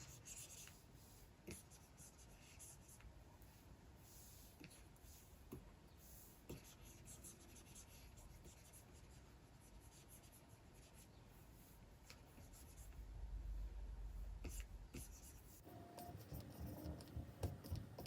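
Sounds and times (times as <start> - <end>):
stylus scratching on screen: 0.0 - 0.9, 6.1 - 13.0, 14.2 - 18.0.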